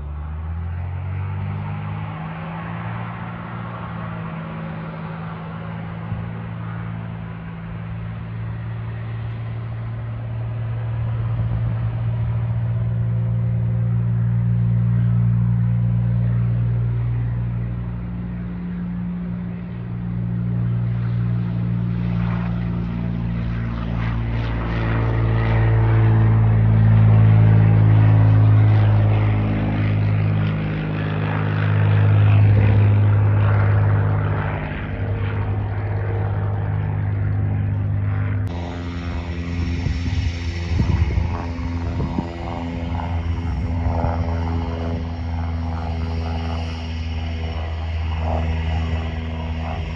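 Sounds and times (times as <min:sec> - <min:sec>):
propeller airplane engine: 0:00.0 - 0:49.9.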